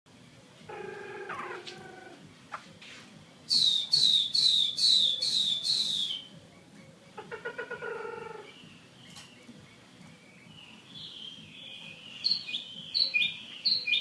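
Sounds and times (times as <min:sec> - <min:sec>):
harsh bird call: 0:03.5 - 0:06.3
bird whistling descending notes: 0:03.5 - 0:06.4.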